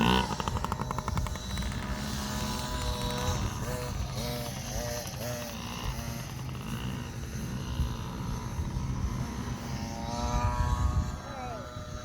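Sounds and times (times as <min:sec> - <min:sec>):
dirt bike engines revving: 0:00.0 - 0:12.0
faint voices: 0:11.2 - 0:12.0.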